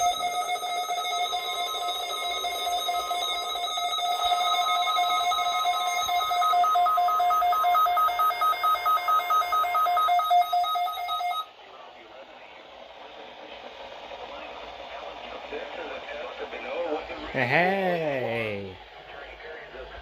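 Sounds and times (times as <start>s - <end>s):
electronic alarm tone and beeping: 0.0s - 11.5s.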